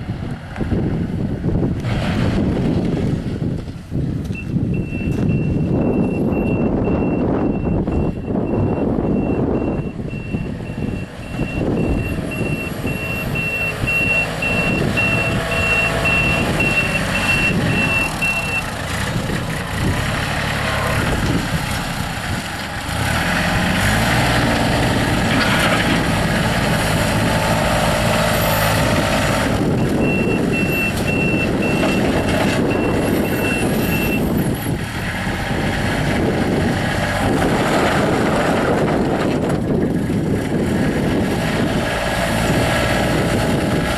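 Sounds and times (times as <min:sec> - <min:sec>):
diesel engine running: 0:00.0 - 0:43.9
backup alarm beeping: 0:04.4 - 0:18.7, 0:29.8 - 0:34.3.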